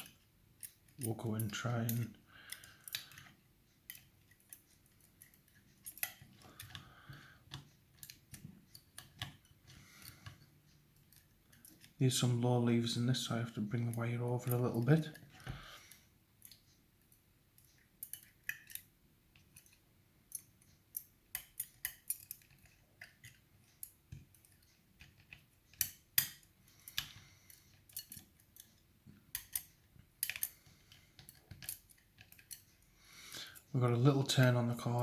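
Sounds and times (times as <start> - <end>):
lock picks clicking in lock: 0.0 - 6.8, 17.6 - 32.7.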